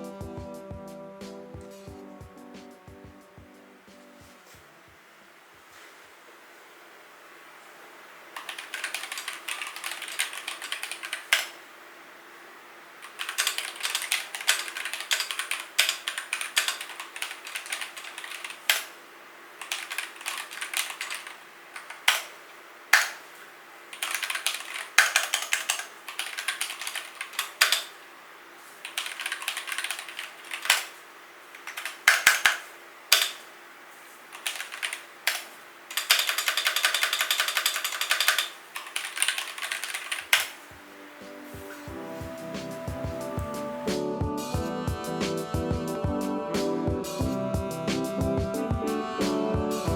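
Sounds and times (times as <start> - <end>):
mechanical keyboard typing: 8.4 - 11.6, 13.0 - 19.0, 19.6 - 23.2, 23.9 - 28.0, 28.8 - 31.0, 31.6 - 33.5, 34.4 - 40.6.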